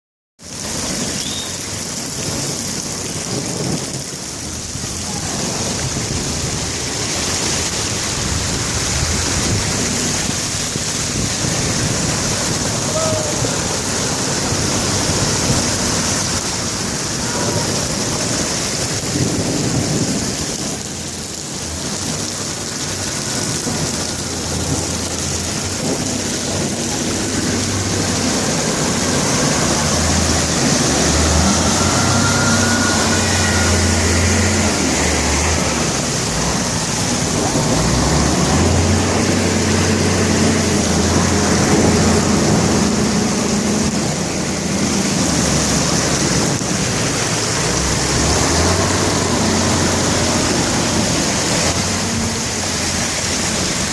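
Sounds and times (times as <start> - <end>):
heavy rain pouring: 0.4 - 53.9.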